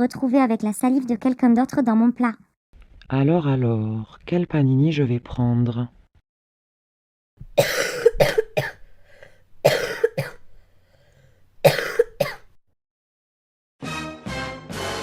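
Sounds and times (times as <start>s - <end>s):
person coughing: 7.6s - 8.9s, 9.6s - 10.4s, 11.6s - 12.5s
music: 13.8s - 15.0s.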